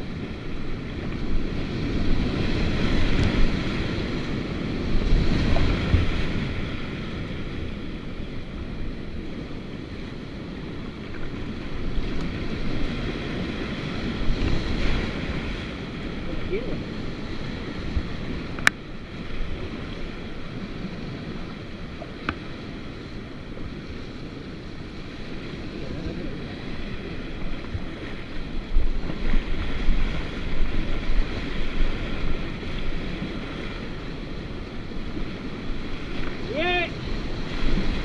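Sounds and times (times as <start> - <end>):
wind buffeting microphone: 0.0 - 38.0
river rushing through rapids: 34.7 - 38.0.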